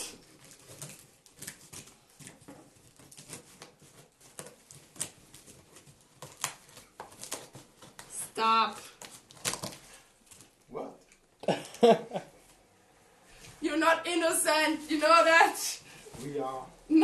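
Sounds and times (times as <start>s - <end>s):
cardboard rustling: 0.2s - 10.6s.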